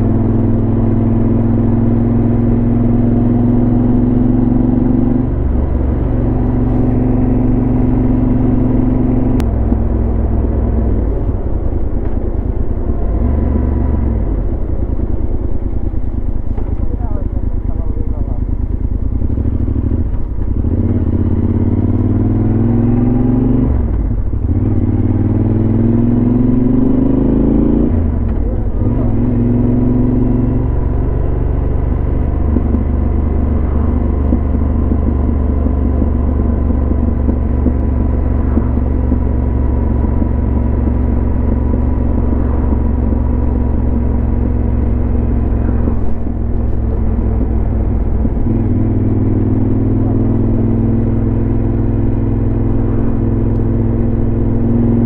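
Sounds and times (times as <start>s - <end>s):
motorcycle engine accelerating: 0.0s - 55.0s.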